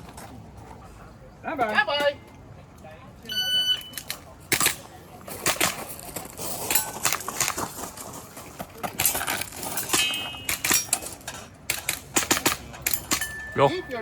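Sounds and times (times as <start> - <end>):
pellets clinking on steel targets: 5.4 - 7.8, 8.8 - 14.0
metal plate ringing: 9.9 - 11.0, 12.9 - 14.0.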